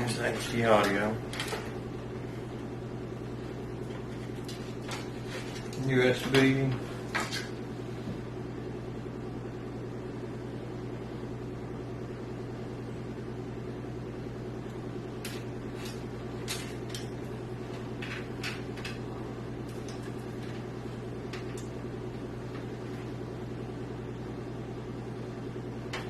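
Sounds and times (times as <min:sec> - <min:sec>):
cables clicking and rustling: 0:00.0 - 0:01.8, 0:03.5 - 0:07.6, 0:14.6 - 0:23.2
low electrical hum: 0:00.0 - 0:26.0.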